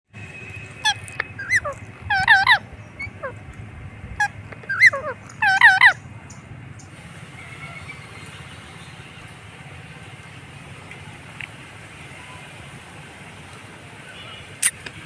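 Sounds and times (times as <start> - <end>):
parrot squeaky chirps: 0.8 - 3.4, 4.1 - 6.4.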